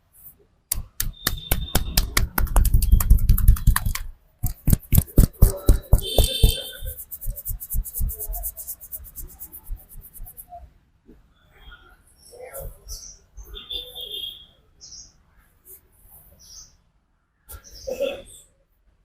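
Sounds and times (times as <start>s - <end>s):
hands tapping and slapping head: 0.7s - 10.3s.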